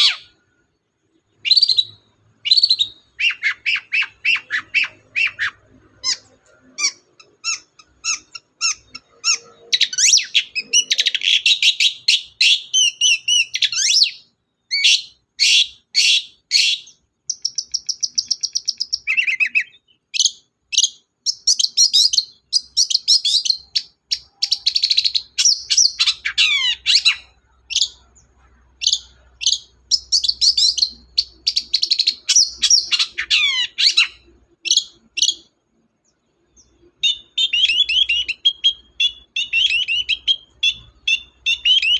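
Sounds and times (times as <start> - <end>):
bird singing chirps and trills: 0.0 - 41.9.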